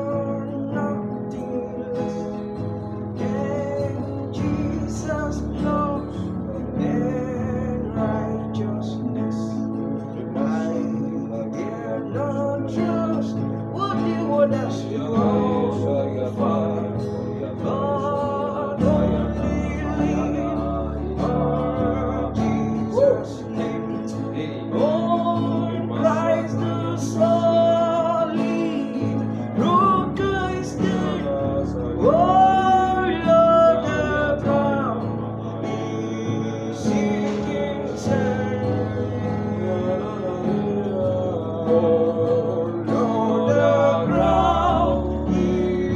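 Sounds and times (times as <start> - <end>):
guitar: 0.0 - 45.9
person singing a hymn: 0.0 - 45.9
bass: 28.1 - 45.9.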